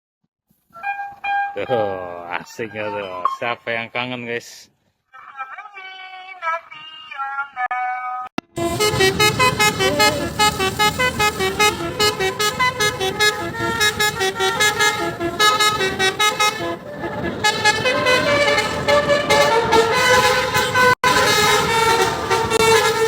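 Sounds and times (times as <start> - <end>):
musical air horn melody: 0.8 - 3.4, 8.5 - 23.0.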